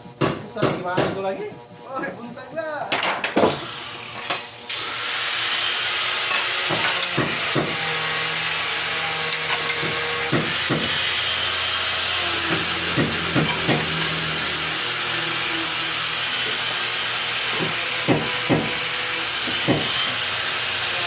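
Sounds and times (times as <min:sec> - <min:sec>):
woodworking machinery running: 0:03.4 - 0:21.0
sharp knocks: 0:12.5 - 0:14.0.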